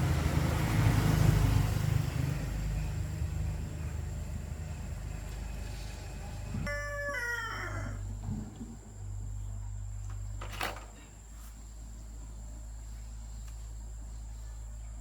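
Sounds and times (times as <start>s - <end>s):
rooster crowing: 6.6s - 8.2s.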